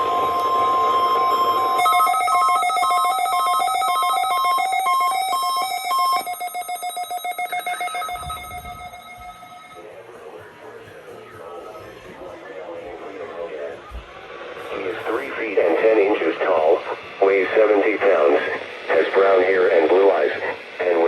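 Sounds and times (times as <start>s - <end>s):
steady warning alarm tone: 0.0s - 12.2s
pulsing electronic alert beeps: 4.2s - 9.8s.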